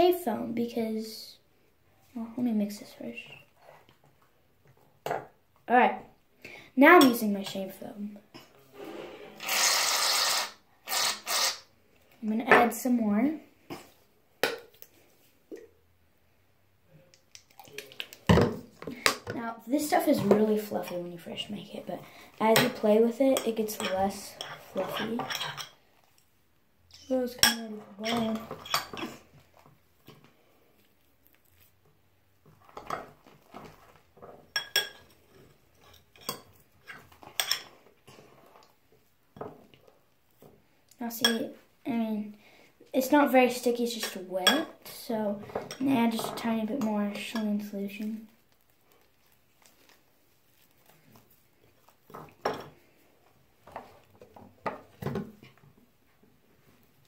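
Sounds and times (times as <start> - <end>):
utensil scraping bowl: 8.4 - 11.7, 19.9 - 26.2.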